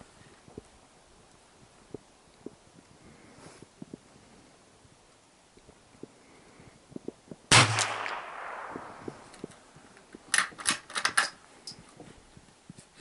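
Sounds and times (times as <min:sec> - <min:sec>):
rifle shot with echo: 0:07.5 - 0:09.7.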